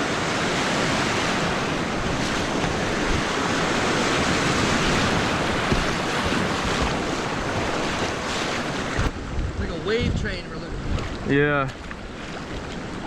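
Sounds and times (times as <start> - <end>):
whitewater rushing: 0.0 - 9.1.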